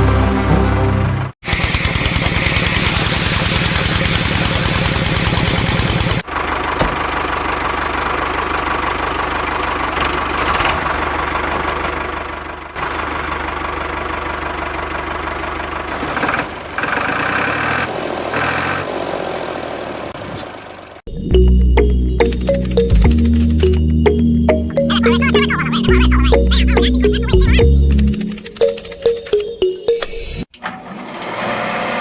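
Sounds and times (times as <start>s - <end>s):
music with steady beat: 21.3s - 30.2s.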